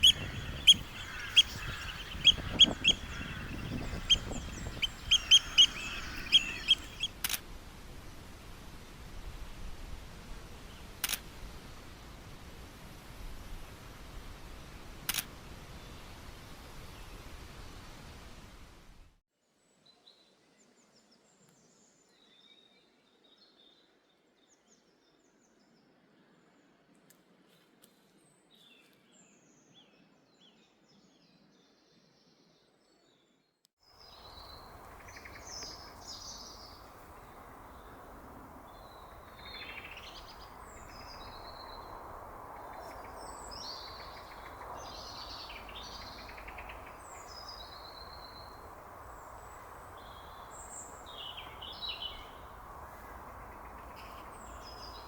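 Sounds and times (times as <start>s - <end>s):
birds chirping and trilling: 0.0s - 7.1s, 34.1s - 55.0s.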